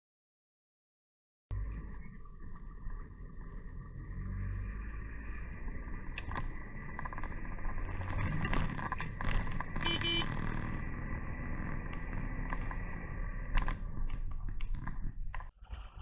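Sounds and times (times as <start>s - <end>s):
lorry engine and road drone: 1.5s - 16.0s
clicks and rattles: 6.1s - 10.9s, 11.8s - 15.6s.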